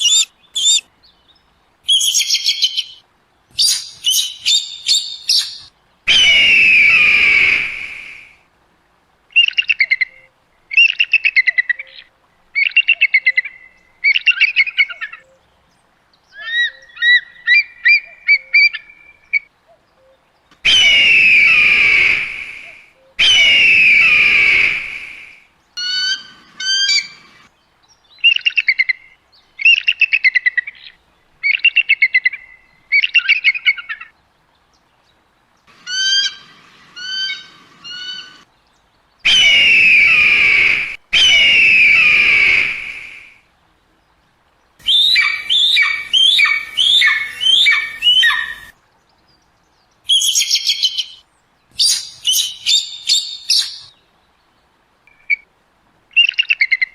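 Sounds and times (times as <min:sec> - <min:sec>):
eagle harsh screams: 0:00.0 - 0:00.8, 0:20.7 - 0:25.2, 0:39.3 - 0:43.3, 0:44.8 - 0:48.7
eagle high chittering calls: 0:00.0 - 0:00.9, 0:01.9 - 0:07.9, 0:20.6 - 0:25.1, 0:25.8 - 0:27.4, 0:39.3 - 0:43.2, 0:44.8 - 0:48.8, 0:50.1 - 0:54.0.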